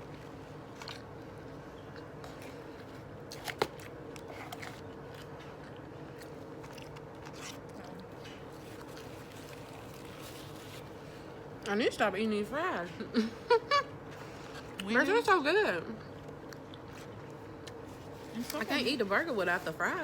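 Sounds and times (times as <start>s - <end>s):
chewing and biting food: 0.0s - 11.1s, 16.0s - 18.6s.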